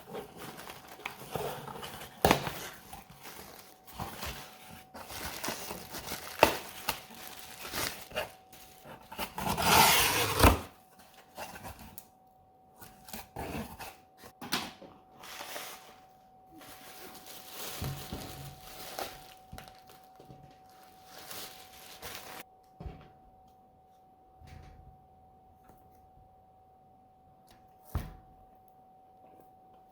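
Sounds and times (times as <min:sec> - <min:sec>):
packaging rustling and tearing: 0:00.0 - 0:12.0, 0:16.6 - 0:22.5
faint high hum: 0:00.0 - 0:29.9.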